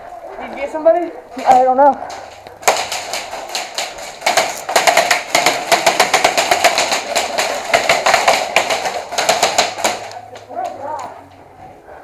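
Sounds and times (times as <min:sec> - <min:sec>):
airsoft guns firing bursts: 0:02.6 - 0:10.2.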